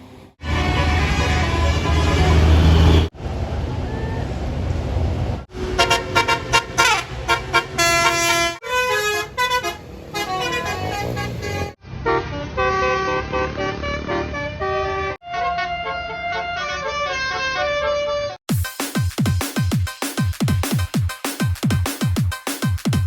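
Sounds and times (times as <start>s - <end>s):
bus engine and road noise: 0.0s - 18.4s
multi-tone musical bus horn: 0.4s - 3.1s, 5.5s - 18.4s.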